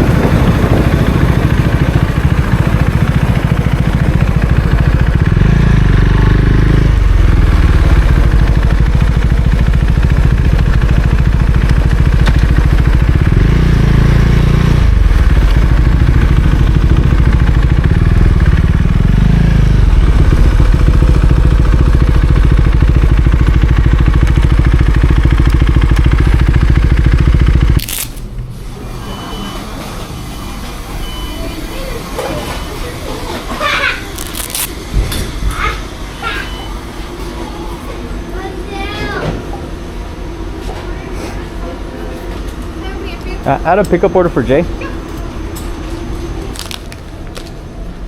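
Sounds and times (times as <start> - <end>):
motorcycle engine revving: 0.0 - 29.4, 33.4 - 35.1.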